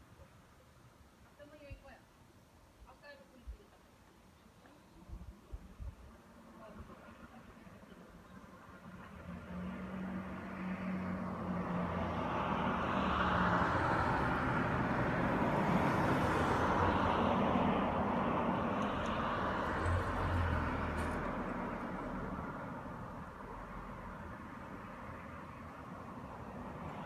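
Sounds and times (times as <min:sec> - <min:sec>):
vehicle passing by: 0:08.3 - 0:27.0.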